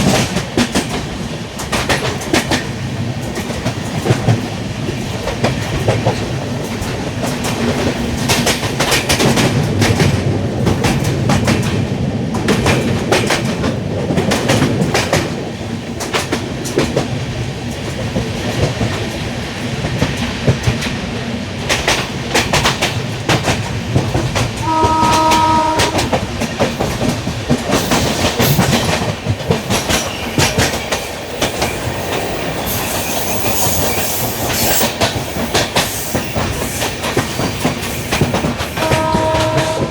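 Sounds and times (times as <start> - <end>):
train rumbling: 0.0 - 39.9
wheels clicking over rail joints: 21.6 - 39.9
locomotive horn: 24.6 - 26.2, 38.8 - 39.9.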